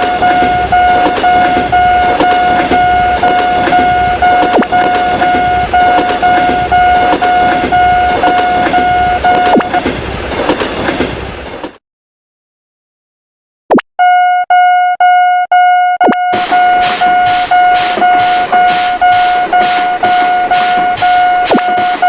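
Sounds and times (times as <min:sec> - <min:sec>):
railroad crossing bell ringing: 0:00.0 - 0:09.7, 0:16.3 - 0:22.0
train wheels clickety-clack: 0:00.0 - 0:11.8, 0:16.4 - 0:22.0.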